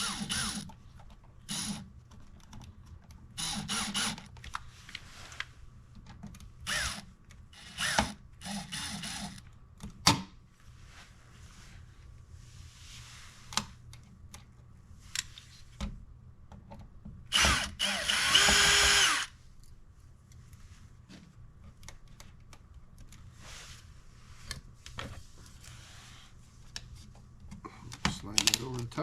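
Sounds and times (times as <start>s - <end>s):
power drill driving a screw: 0.0s - 0.7s, 1.5s - 1.8s, 3.4s - 4.3s, 6.7s - 7.0s, 7.6s - 9.4s, 17.3s - 19.3s
clicks and knocks of handling parts: 26.7s - 29.0s.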